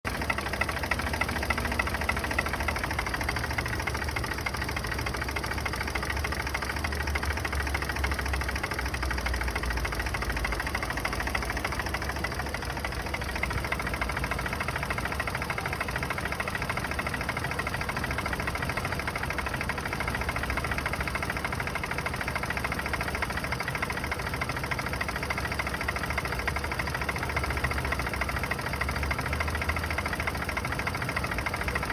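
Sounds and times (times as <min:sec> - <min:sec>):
rapid engine knocking: 0:00.0 - 0:31.9
car engine idling: 0:00.1 - 0:31.9.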